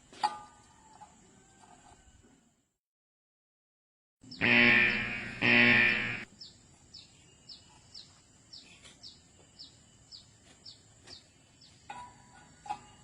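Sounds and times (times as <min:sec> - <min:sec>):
bird chirping: 0:04.2 - 0:11.9
loud pitched sound: 0:04.4 - 0:06.3.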